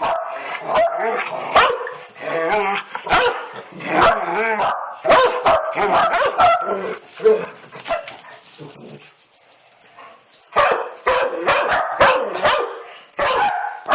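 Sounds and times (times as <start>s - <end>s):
dog barking: 0.0s - 1.9s, 3.0s - 8.4s, 10.5s - 13.9s.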